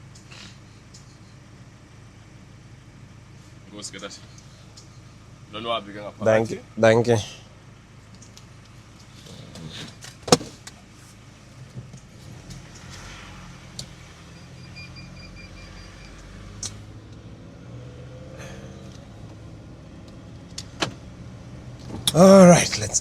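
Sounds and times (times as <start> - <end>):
car engine humming: 0.0 - 23.0.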